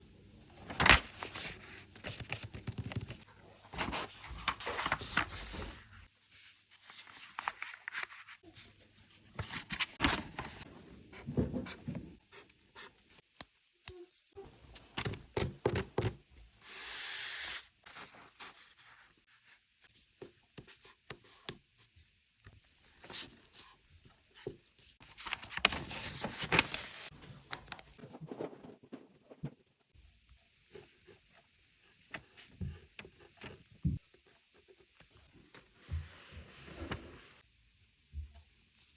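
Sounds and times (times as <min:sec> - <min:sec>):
paper crinkling and rustling: 0:00.6 - 0:08.5, 0:09.2 - 0:10.7, 0:24.8 - 0:29.1.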